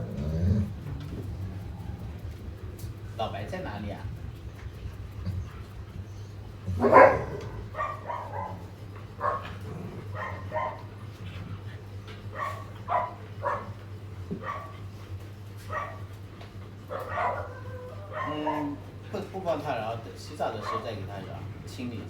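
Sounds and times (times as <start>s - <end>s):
dogs barking and yipping: 5.3s - 14.9s, 15.6s - 16.2s, 16.8s - 19.0s, 20.4s - 21.1s.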